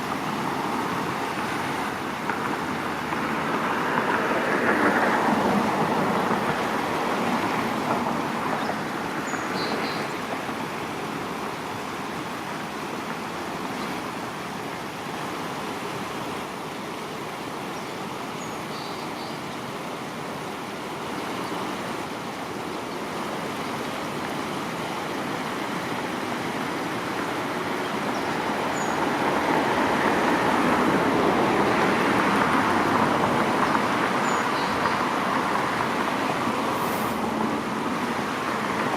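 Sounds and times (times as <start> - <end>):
road traffic rushing: 0.0 - 11.4, 25.4 - 38.9.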